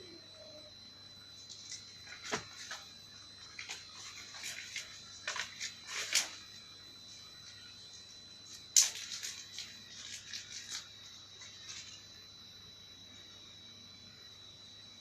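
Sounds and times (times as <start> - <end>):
faint high whine: 0.0 - 15.0
packaging crinkling and rustling: 1.5 - 6.5, 8.5 - 12.0.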